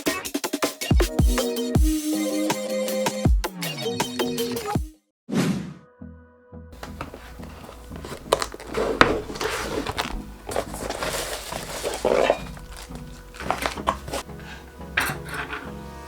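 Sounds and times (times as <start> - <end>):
cardboard and plastic rustling: 6.8 - 14.6.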